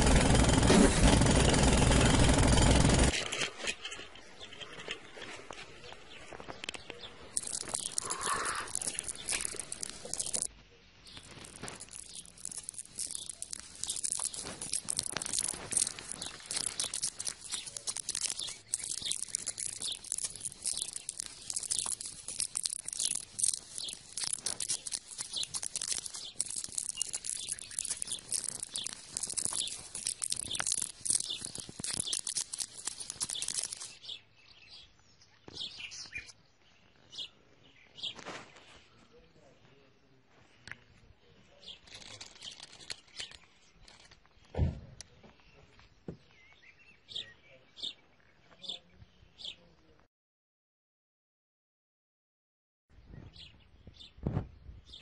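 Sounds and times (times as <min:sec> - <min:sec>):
scratchy crunching and scraping: 0:00.0 - 0:10.5, 0:11.1 - 0:34.2, 0:41.6 - 0:44.4.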